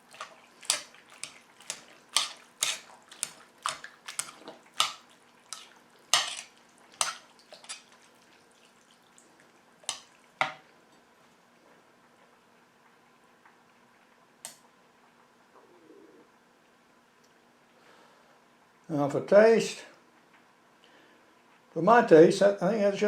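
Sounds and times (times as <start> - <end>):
spoon clinking against a dish: 0.2 - 7.9.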